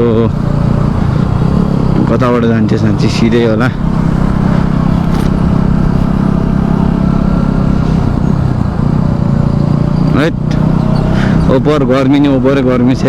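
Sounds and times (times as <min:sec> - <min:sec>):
motorcycle engine running: 0:00.0 - 0:13.0
wind on microphone: 0:03.7 - 0:09.3.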